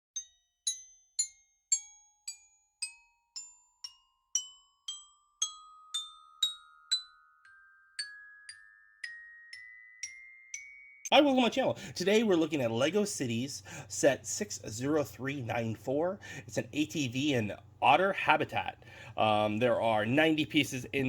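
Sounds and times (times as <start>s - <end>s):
bell-like struck notes: 0.2s - 11.2s.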